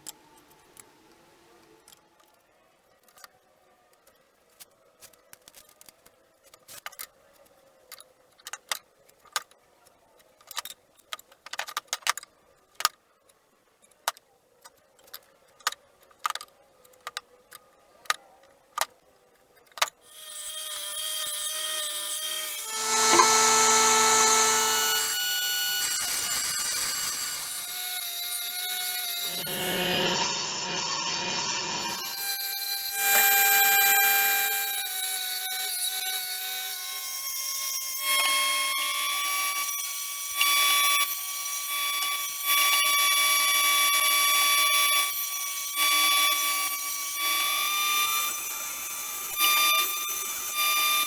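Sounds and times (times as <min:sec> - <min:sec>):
electric power tool whining: 0:20.1 - 0:51.0.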